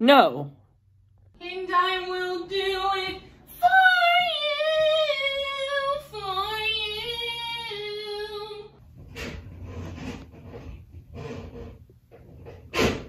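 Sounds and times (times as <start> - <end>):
rubbing and scraping noises: 8.8 - 13.0.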